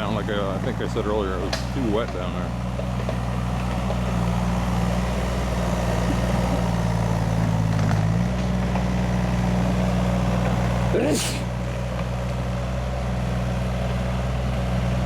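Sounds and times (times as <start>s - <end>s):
small excavator engine running: 0.0s - 15.0s.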